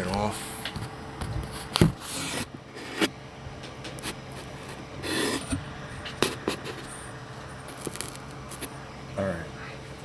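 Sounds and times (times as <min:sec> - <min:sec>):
short scraping rub: 0:04.0 - 0:07.1.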